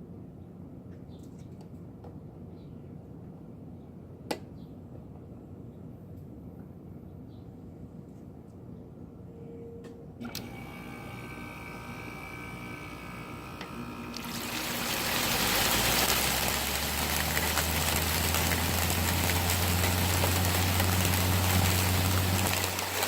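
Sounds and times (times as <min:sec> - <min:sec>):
air conditioner fan noise: 0:00.0 - 0:23.0
low compressor hum: 0:10.4 - 0:23.0
water splashing and trickling: 0:14.1 - 0:23.0.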